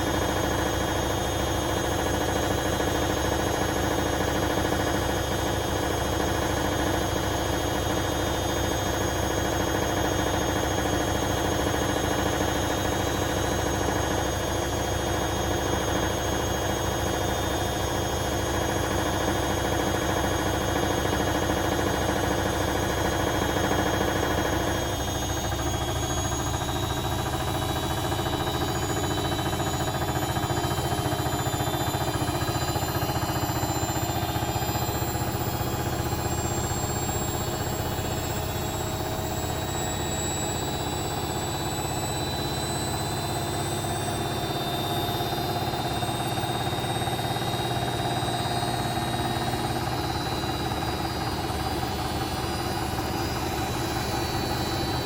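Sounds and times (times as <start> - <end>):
motor whine: 21.6 - 55.0.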